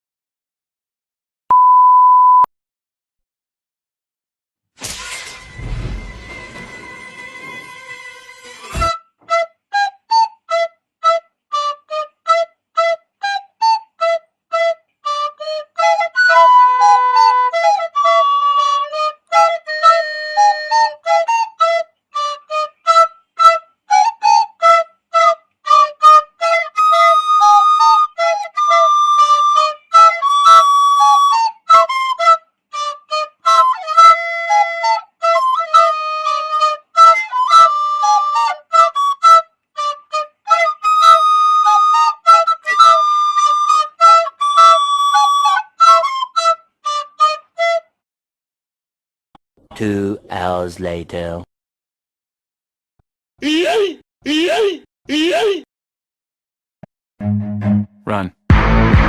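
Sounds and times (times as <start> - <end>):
flute-like melody: 6.2 - 48.0, 57.2 - 58.0.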